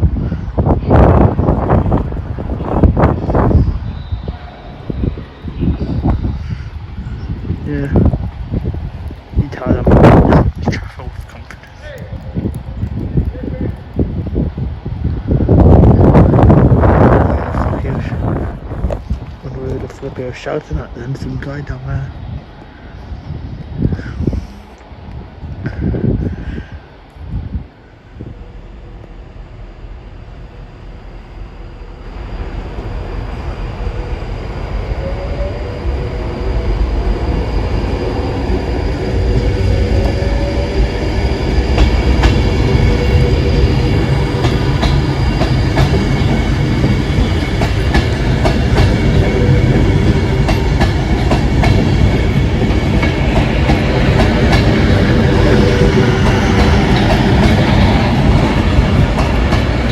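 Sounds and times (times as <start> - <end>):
train rumbling past: 0.0 - 59.9
wheels clacking over rail joints: 39.4 - 59.9.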